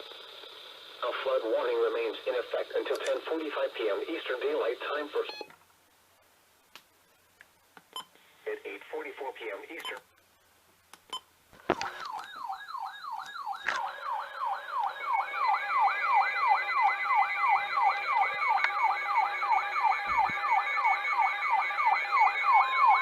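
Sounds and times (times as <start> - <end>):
electronic siren yelping: 11.8 - 23.0.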